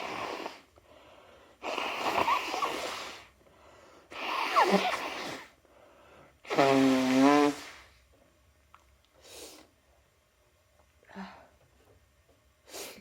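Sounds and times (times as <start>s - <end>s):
person sneezing: 4.2s - 5.5s.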